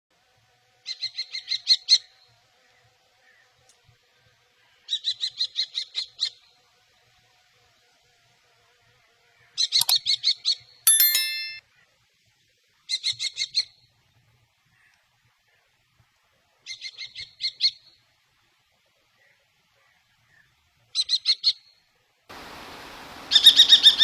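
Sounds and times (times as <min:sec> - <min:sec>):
kestrel calling: 0:23.3 - 0:24.0.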